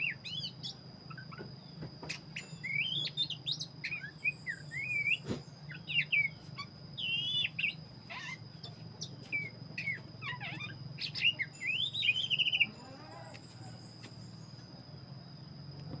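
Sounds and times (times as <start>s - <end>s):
bird singing whistled phrases: 0.0s - 1.4s, 2.1s - 8.4s, 9.0s - 12.8s
steady high-pitched tone: 5.8s - 15.9s.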